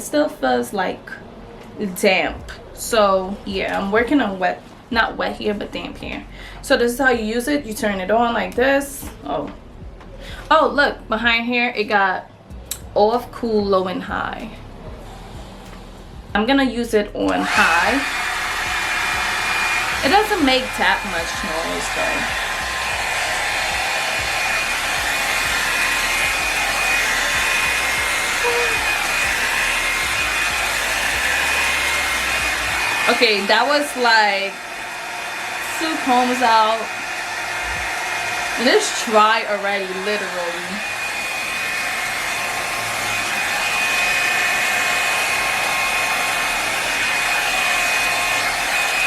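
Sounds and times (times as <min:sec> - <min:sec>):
hot air brush blowing: 0:17.4 - 0:49.0.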